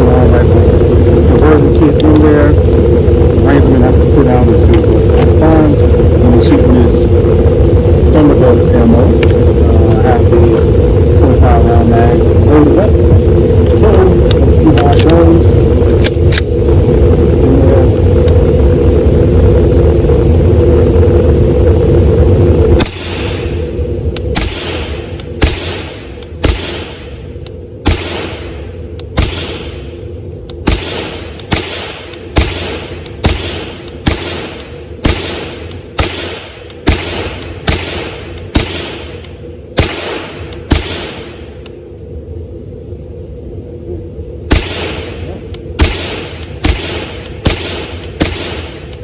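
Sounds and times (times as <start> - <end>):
loud rumble with low hum: 0.0 - 49.0
rifle shots echoing: 22.8 - 23.6, 24.3 - 27.2, 27.8 - 29.9, 30.6 - 39.2, 39.8 - 41.5, 44.5 - 48.9.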